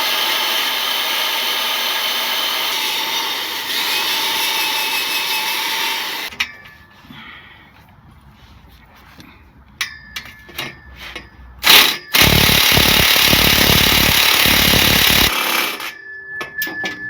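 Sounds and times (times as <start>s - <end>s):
impact wrench hammering: 11.6s - 15.9s.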